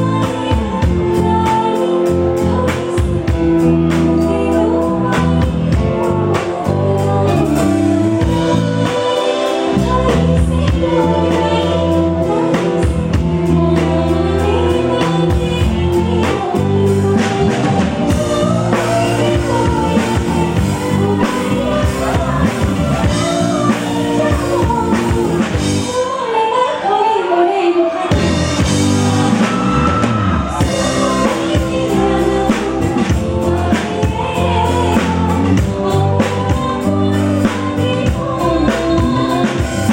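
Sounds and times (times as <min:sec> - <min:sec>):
live band music: 0:00.0 - 0:39.9
woman singing: 0:00.0 - 0:39.9.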